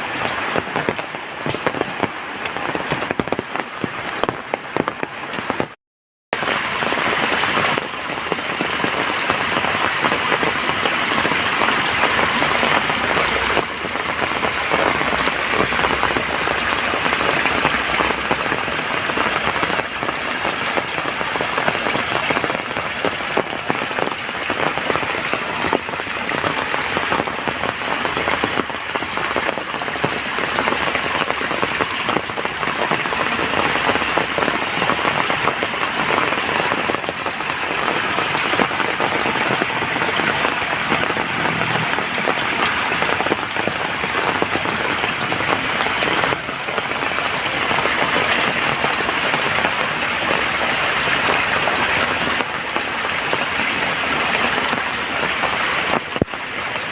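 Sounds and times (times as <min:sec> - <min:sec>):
steady rain falling: 0:00.0 - 0:05.8, 0:06.4 - 0:56.9.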